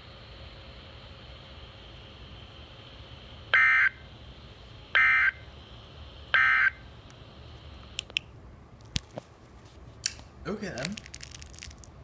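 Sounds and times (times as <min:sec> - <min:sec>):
digital data tone bursts: 0:05.0 - 0:05.4, 0:06.4 - 0:06.8.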